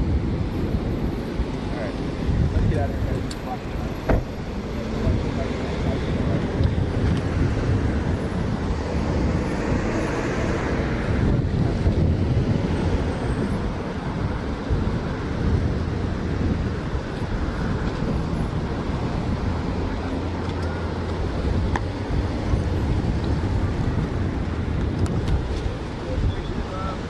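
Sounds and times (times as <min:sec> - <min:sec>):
wind noise on microphone: 0:00.0 - 0:27.0
low engine rumble: 0:18.8 - 0:27.0.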